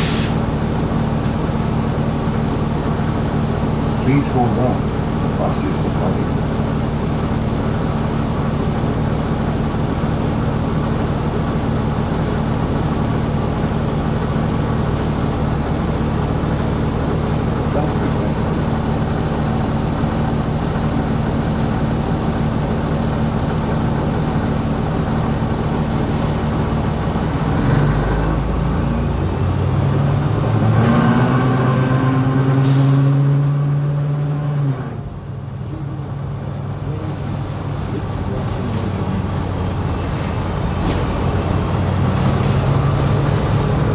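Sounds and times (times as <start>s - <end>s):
air brake hiss: 0.0s - 0.4s, 32.6s - 33.2s
bus drivetrain droning: 0.0s - 43.9s.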